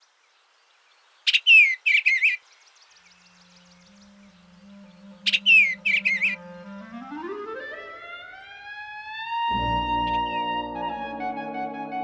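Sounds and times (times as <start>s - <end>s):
bird singing warbled phrases: 0.0s - 6.8s
low held musical note: 6.3s - 12.0s.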